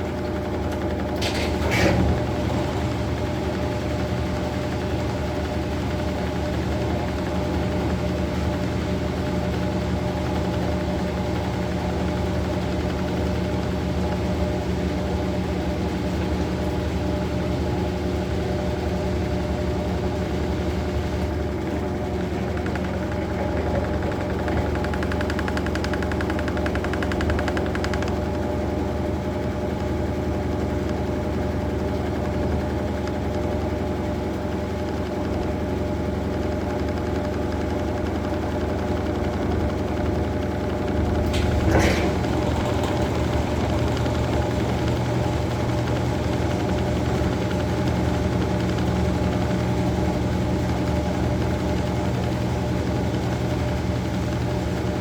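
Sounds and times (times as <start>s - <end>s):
washing machine motor hum: 0.0s - 55.0s
fine rapid rattle: 21.3s - 28.5s.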